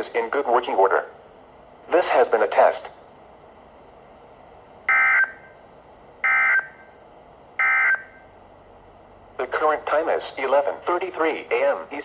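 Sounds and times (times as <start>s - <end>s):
digital data tone bursts: 7.6s - 8.2s.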